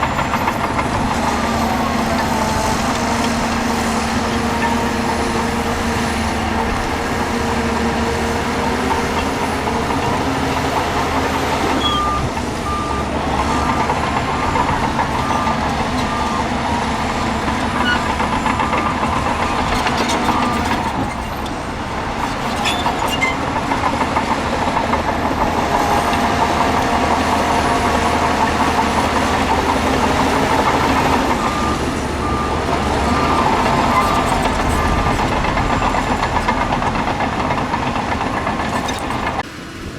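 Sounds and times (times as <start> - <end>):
heavy diesel machinery running: 0.0 - 39.9
reversing alarm beeping: 8.6 - 21.3, 25.7 - 37.2.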